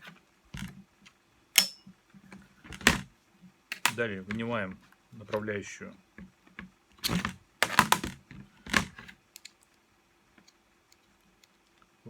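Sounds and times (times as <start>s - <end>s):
hard parts clicking and clattering: 3.7s - 5.5s, 6.2s - 9.6s.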